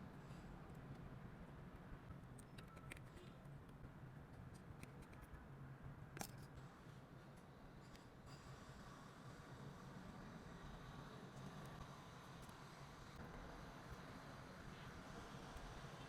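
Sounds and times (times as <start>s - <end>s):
small tool clicks and taps: 4.5s - 5.4s, 6.2s - 6.5s.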